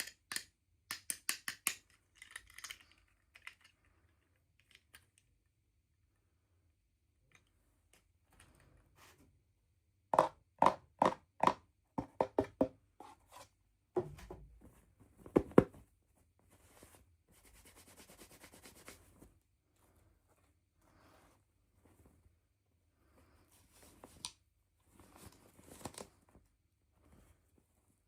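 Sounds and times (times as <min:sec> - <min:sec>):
plastic toys being handled: 0:00.0 - 0:06.1, 0:07.1 - 0:09.3, 0:23.2 - 0:28.0.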